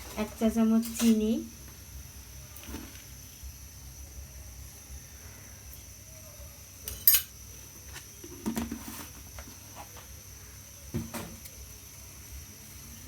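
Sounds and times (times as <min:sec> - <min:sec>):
metal spoon clinking on kitchenware: 0:06.8 - 0:07.4.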